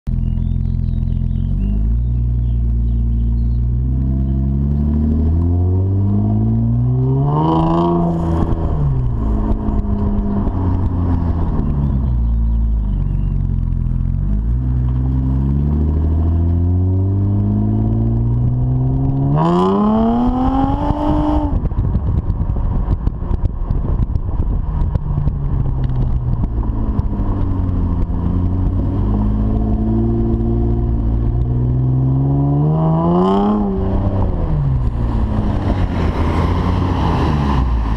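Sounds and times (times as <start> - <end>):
car engine accelerating and revving: 0.1 - 37.9.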